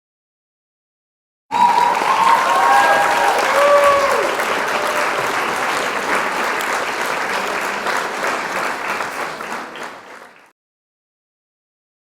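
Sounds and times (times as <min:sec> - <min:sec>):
many hands clapping: 0:01.5 - 0:10.6.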